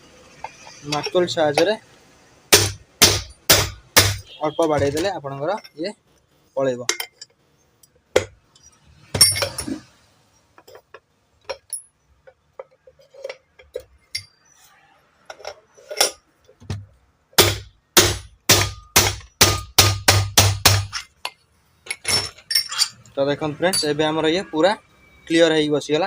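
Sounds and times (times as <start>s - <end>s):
hammer striking metal: 2.5s - 5.1s, 17.4s - 21.1s.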